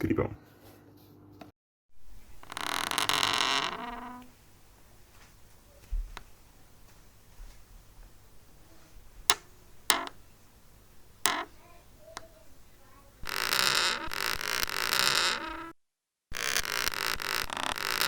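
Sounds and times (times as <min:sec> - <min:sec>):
door hinge creaking: 0:02.0 - 0:04.4, 0:09.3 - 0:10.2, 0:11.2 - 0:15.7, 0:16.3 - 0:18.0.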